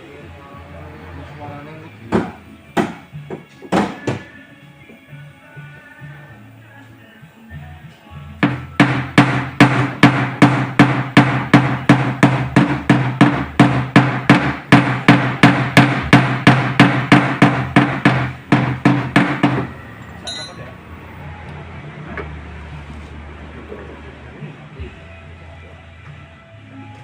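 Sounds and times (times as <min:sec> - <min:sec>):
hammering on sheet metal: 0:08.4 - 0:19.7.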